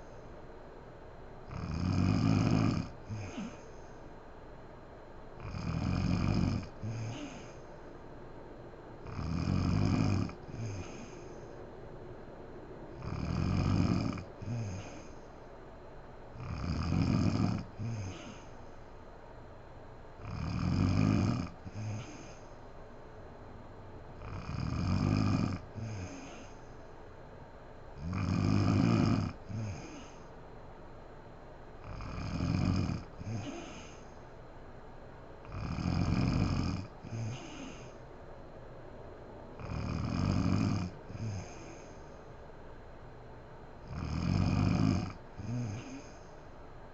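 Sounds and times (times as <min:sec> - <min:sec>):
faint breath sound: 0:00.0 - 0:00.7, 0:02.9 - 0:04.6, 0:06.5 - 0:16.6, 0:17.2 - 0:19.2, 0:21.3 - 0:23.0, 0:25.2 - 0:27.2, 0:29.2 - 0:30.5, 0:33.0 - 0:34.6, 0:36.5 - 0:38.3, 0:40.9 - 0:43.0, 0:44.6 - 0:46.9
woman snoring: 0:01.5 - 0:03.8, 0:05.4 - 0:07.7, 0:09.0 - 0:11.5, 0:13.0 - 0:15.2, 0:16.4 - 0:18.6, 0:20.2 - 0:22.5, 0:24.2 - 0:26.7, 0:28.0 - 0:30.3, 0:31.8 - 0:34.2, 0:35.4 - 0:38.0, 0:39.6 - 0:42.1, 0:43.8 - 0:46.3.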